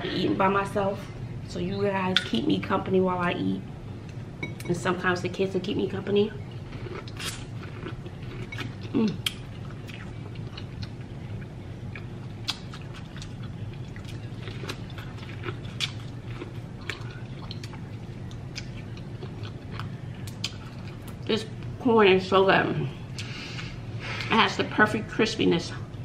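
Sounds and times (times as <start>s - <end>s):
steady low hum: 0.0s - 26.0s
chewing and biting food: 6.6s - 21.2s.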